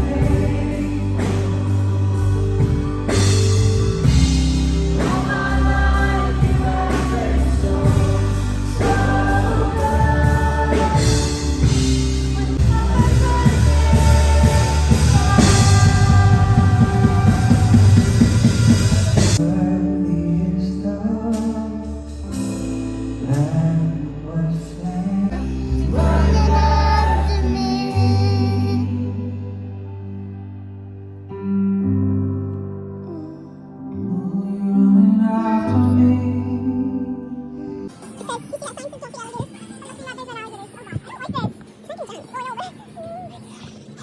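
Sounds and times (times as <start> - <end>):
music with singing: 0.0 - 31.9, 32.9 - 44.0.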